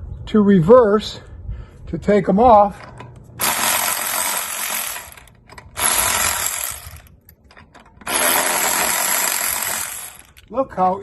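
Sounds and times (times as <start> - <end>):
electric ratchet wrench whirring: 2.9 - 10.4.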